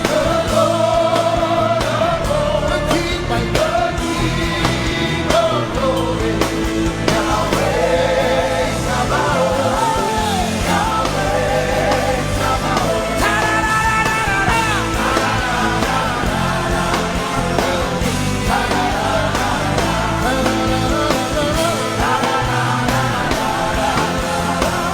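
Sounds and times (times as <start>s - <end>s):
worship music with band: 0.0s - 24.9s.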